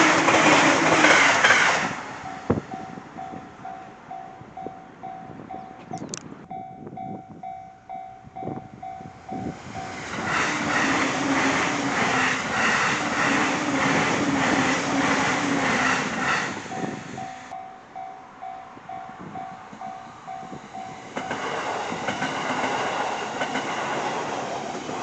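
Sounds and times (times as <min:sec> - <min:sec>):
train passing at speed: 0:00.0 - 0:25.0.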